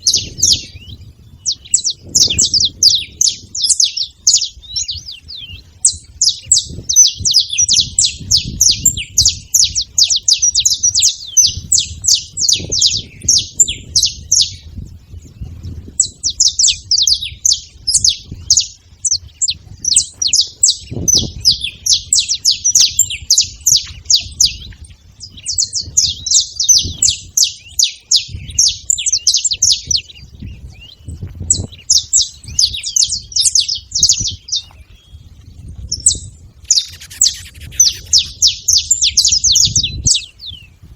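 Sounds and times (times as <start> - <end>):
finches chirping: 16.0 - 40.7.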